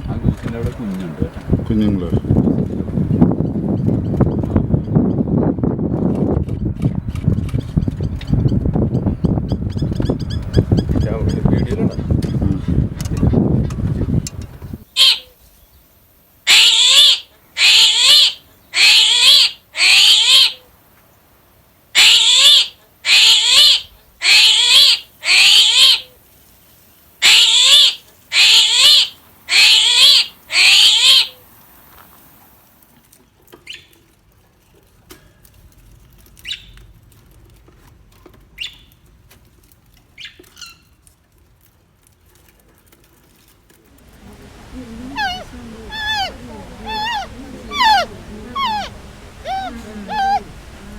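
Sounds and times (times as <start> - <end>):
bird squawking harshly: 14.9 - 15.3, 16.5 - 20.6, 22.0 - 26.1, 27.2 - 31.4, 45.2 - 50.5.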